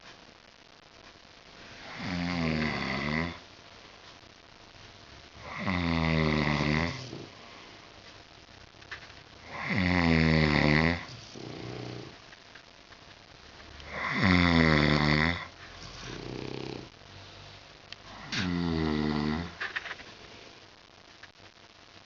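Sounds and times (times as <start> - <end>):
pet snoring: 1.8 - 3.4, 5.4 - 7.4, 9.4 - 12.2, 13.9 - 16.9, 18.1 - 19.6.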